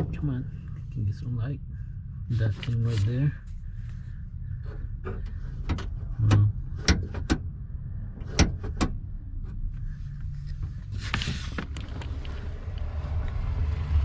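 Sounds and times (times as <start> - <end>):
steady low hum: 0.0 - 14.0
short rustle: 10.4 - 12.6.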